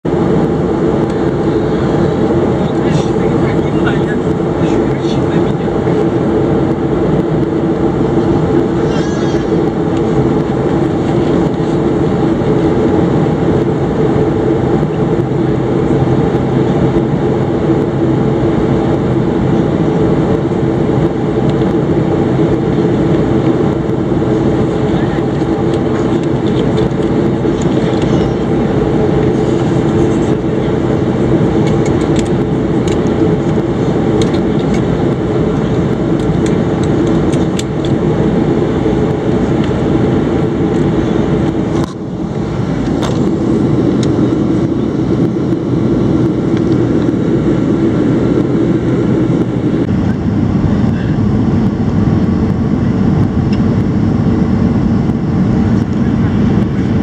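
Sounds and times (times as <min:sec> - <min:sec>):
airliner cabin engine noise: 0:00.0 - 0:57.0
low hum: 0:00.0 - 0:57.0.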